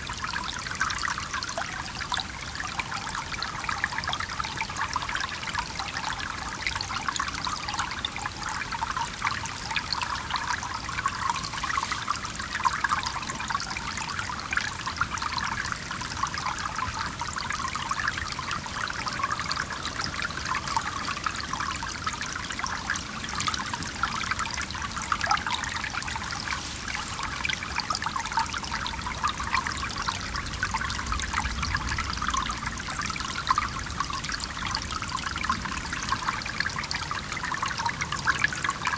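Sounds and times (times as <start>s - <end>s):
stream bubbling over rocks: 0.0s - 38.9s.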